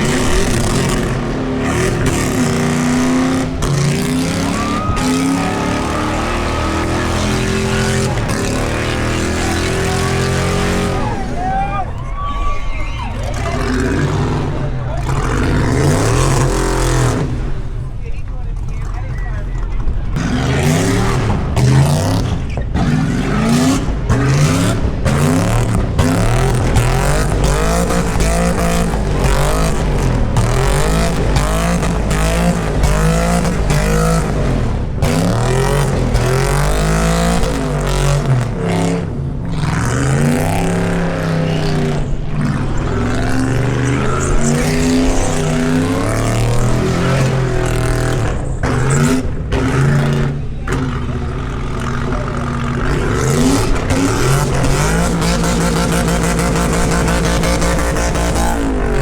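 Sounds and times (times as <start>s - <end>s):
car engine revving hard: 0.0s - 11.8s, 13.1s - 17.9s, 20.0s - 59.0s.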